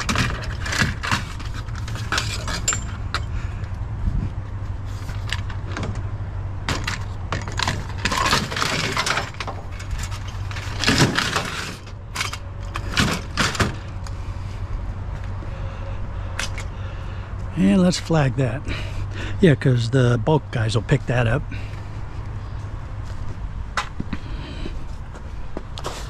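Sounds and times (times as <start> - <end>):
scrap metal knocking and rattling: 0.0 - 3.3, 4.9 - 14.0.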